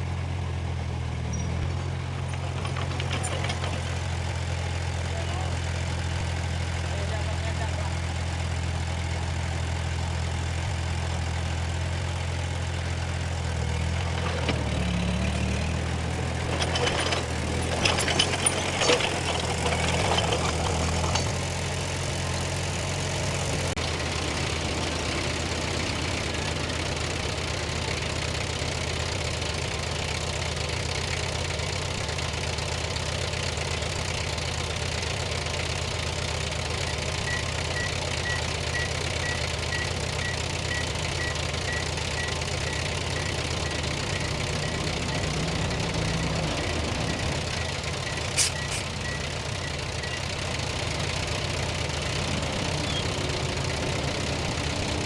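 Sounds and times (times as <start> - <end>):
diesel engine running: 0.0 - 55.0
metal clanks and rattles: 1.3 - 4.8, 14.0 - 22.3, 42.2 - 50.6
reversing alarm beeping: 36.9 - 50.4.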